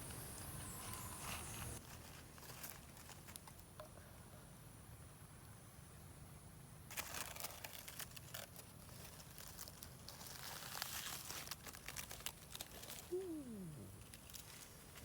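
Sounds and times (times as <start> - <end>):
leaves crinkling and tearing: 0.8 - 3.6, 6.9 - 15.0.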